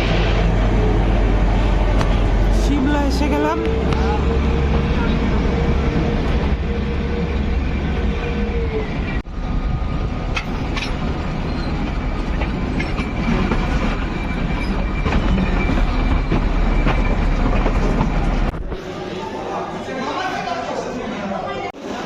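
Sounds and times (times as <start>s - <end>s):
train wheels rumbling on rails: 0.0s - 18.8s
high wheel squeal: 10.4s - 17.6s.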